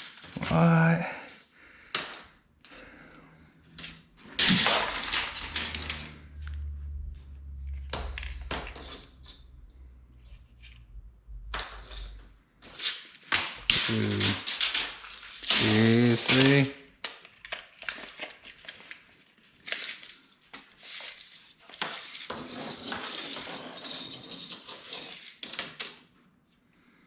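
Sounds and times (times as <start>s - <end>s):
low hum: 5.3s - 12.5s.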